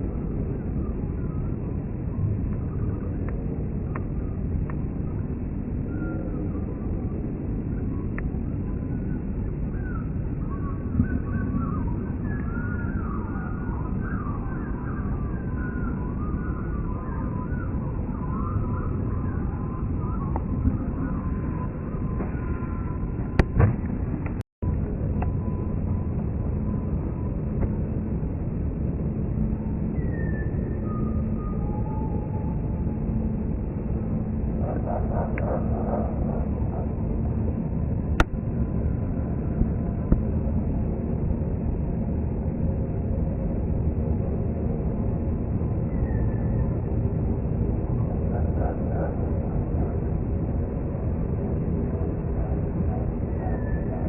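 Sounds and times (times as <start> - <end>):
wavering whistling tones: 0.0 - 23.5, 29.3 - 38.2, 44.8 - 54.0
jet rumbling overhead: 0.0 - 54.0.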